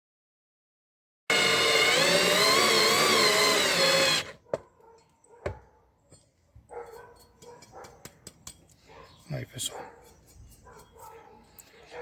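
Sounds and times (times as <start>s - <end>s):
power tool motor whining: 1.3s - 4.4s.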